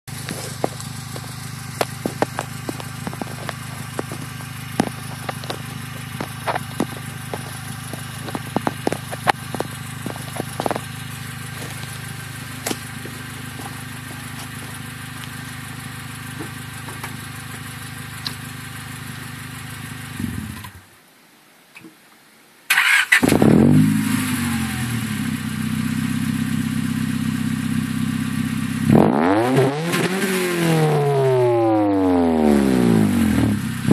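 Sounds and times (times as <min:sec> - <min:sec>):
car engine idling: 0:00.0 - 0:20.8, 0:23.2 - 0:28.9
car engine revving: 0:00.1 - 0:20.7, 0:22.8 - 0:33.9
crackling clicks: 0:00.2 - 0:10.9.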